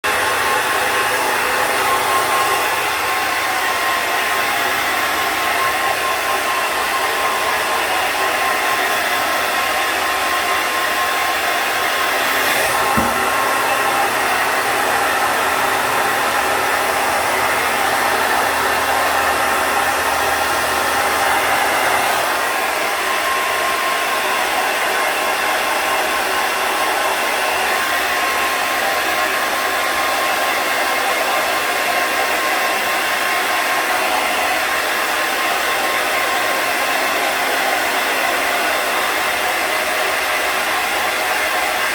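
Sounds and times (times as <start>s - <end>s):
hair dryer blowing: 0.0s - 41.9s
brief knock: 12.3s - 13.5s.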